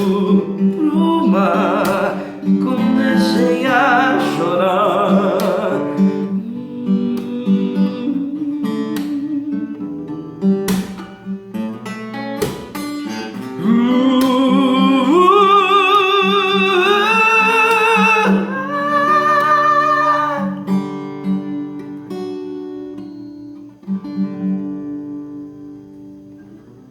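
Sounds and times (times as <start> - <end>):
wordless vocal with vibrato: 0.0 - 10.1, 13.4 - 20.7
acoustic guitar ballad: 0.0 - 26.9.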